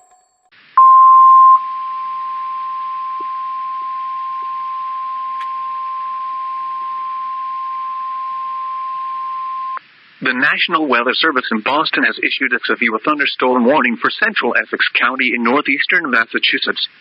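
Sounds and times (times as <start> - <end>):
high alarm beep: 0.8 - 7.0
faint radio hiss: 5.4 - 17.0.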